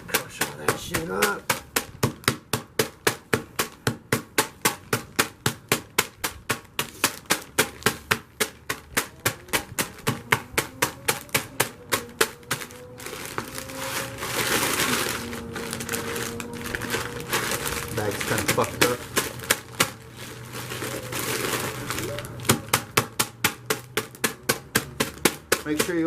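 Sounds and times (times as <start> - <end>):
dry ice being pounded: 0.0 - 14.4, 15.3 - 20.2, 22.1 - 26.0
plastic bag rustling: 6.0 - 26.0.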